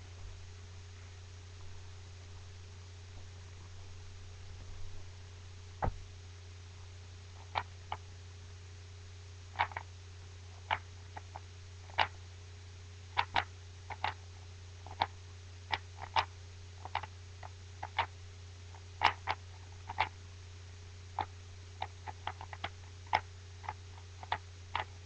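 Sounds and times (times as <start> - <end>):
puzzle cube plastic clicks: 19.0 - 20.1.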